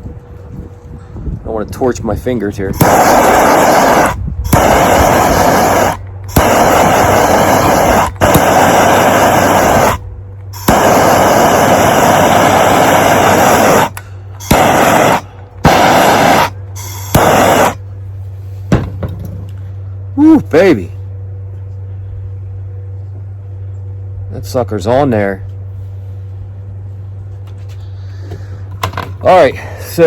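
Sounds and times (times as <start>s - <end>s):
gas torch flame blowing: 2.7s - 17.8s.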